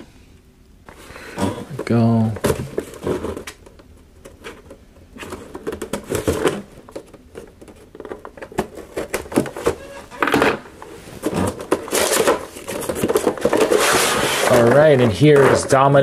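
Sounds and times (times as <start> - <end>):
packaging clicks and rustles: 2.2 - 10.0, 11.2 - 15.8.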